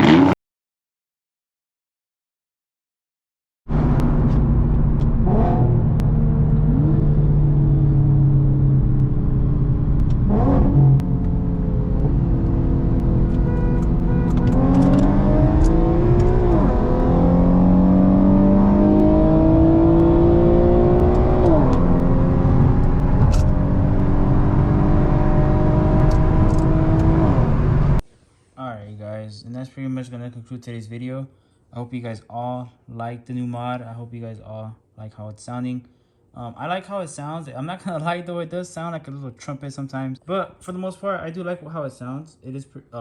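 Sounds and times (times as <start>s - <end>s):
car engine accelerating hard: 0.0s - 0.4s, 3.7s - 28.0s
loud car exhaust: 3.7s - 28.0s.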